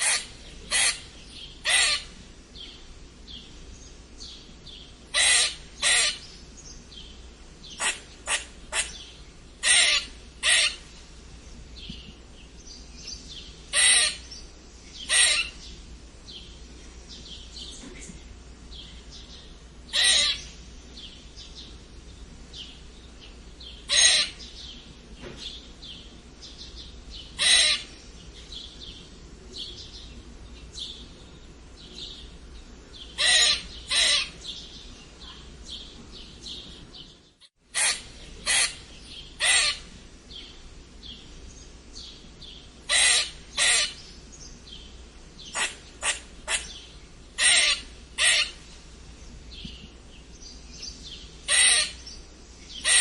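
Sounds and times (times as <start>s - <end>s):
squirrel squeaking: 0.0s - 2.1s, 5.2s - 6.2s, 9.6s - 10.8s, 13.7s - 14.3s, 15.0s - 15.6s, 19.9s - 20.5s, 23.9s - 24.4s, 27.4s - 27.9s, 33.2s - 34.4s, 37.7s - 38.8s, 39.4s - 39.9s, 42.9s - 44.0s, 45.5s - 48.6s, 51.5s - 52.0s, 52.8s - 53.0s.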